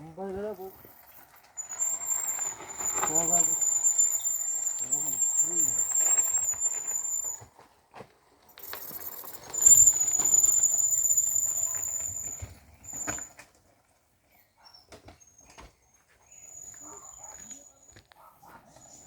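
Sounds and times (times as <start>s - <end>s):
shrill high-pitched whistling tone: 1.6s - 7.5s, 8.6s - 13.3s, 16.3s - 17.8s.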